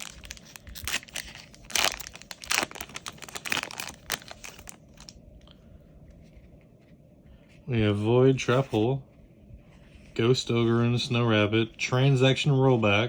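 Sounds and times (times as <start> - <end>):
foil pack crinkling and tearing: 0.0 - 5.1.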